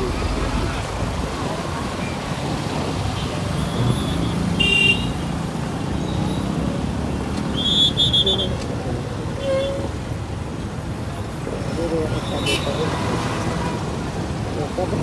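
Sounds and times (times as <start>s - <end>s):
traffic rumble and wind: 0.0s - 15.0s
car horn toot: 4.6s - 5.2s.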